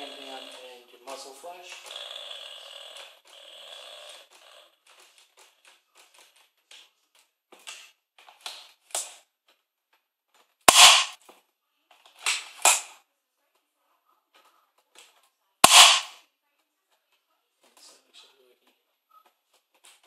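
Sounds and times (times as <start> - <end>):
toy blaster clicking: 10.7 - 11.2, 15.6 - 16.2
toy blaster shots: 10.7 - 11.2, 15.6 - 16.2.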